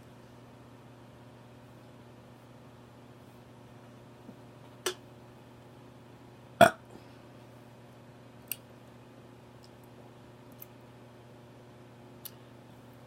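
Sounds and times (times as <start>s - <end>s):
short sharp burps: 6.6s - 6.9s.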